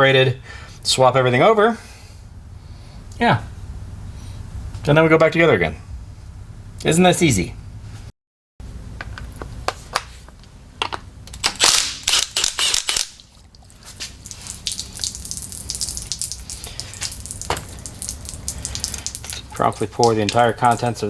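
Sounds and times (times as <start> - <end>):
fuel splashing and dripping: 13.1 - 21.0.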